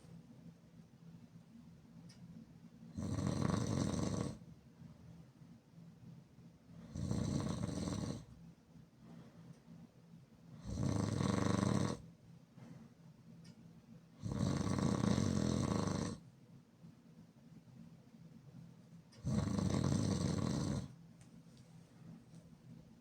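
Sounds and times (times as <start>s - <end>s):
person snoring loudly: 3.0s - 4.4s, 6.9s - 8.2s, 10.6s - 12.0s, 14.2s - 16.2s, 19.2s - 20.9s
quiet breathing: 6.7s - 13.6s, 19.1s - 22.6s.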